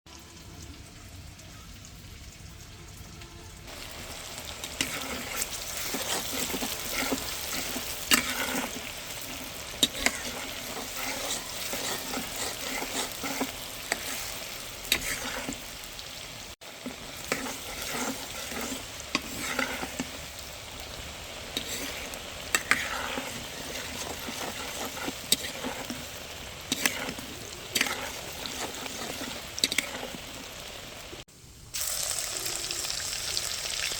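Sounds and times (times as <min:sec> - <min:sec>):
utensil scraping a pan: 0:03.7 - 0:16.0, 0:16.7 - 0:31.0
meat sizzling in a pan: 0:03.7 - 0:33.9.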